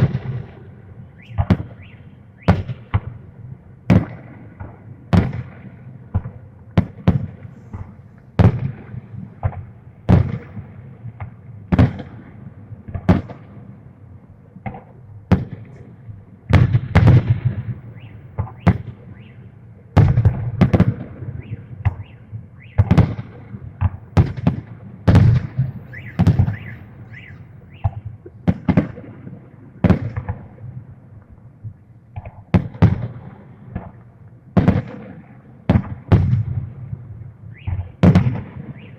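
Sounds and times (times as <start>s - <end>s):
fireworks bursting: 0.0s - 3.2s, 3.9s - 12.3s, 14.7s - 30.6s, 34.6s - 36.7s, 37.5s - 38.9s.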